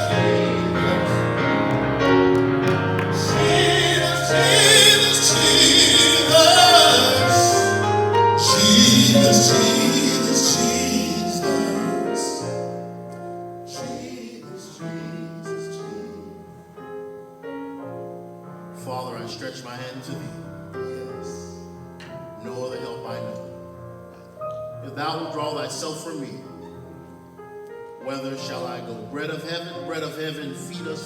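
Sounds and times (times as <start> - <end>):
keyboard chords: 0.0 - 13.7
gospel singers holding notes: 0.0 - 17.6, 18.3 - 23.6, 27.7 - 31.0.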